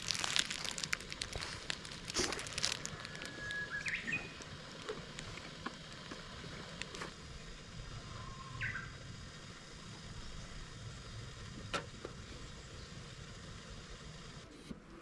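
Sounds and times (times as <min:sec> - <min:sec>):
low background noise: 0:00.0 - 0:15.0
bird singing: 0:02.9 - 0:04.5, 0:07.9 - 0:09.1, 0:10.3 - 0:13.1.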